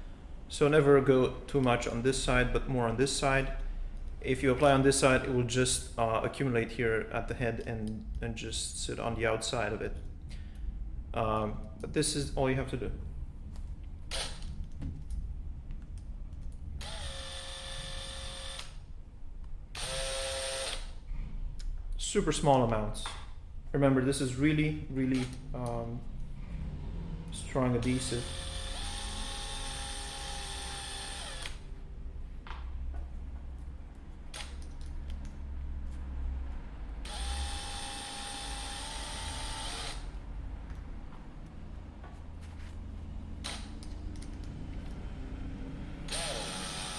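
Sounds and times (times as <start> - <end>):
electric drill motor whine: 14.1 - 14.5, 16.8 - 18.8, 19.8 - 21.0, 27.8 - 31.7, 37.0 - 40.2, 46.0 - 46.9
handheld power tool running: 16.8 - 18.8, 19.8 - 21.0, 27.8 - 31.7, 37.0 - 40.2, 46.1 - 46.9.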